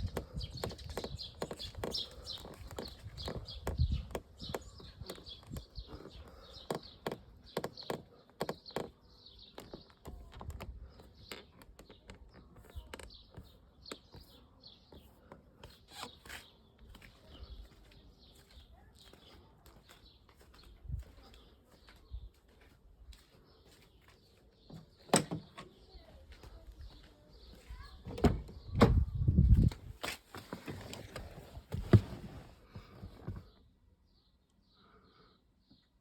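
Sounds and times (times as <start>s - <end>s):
low road thumps: 0.0s - 11.0s, 28.0s - 30.0s
car interior trim creaking: 30.5s - 33.5s.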